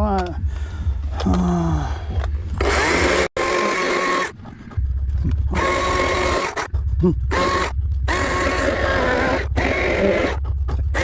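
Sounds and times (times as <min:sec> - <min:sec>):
chainsaw cutting wood: 0:02.6 - 0:04.4, 0:05.5 - 0:06.7, 0:07.3 - 0:10.4.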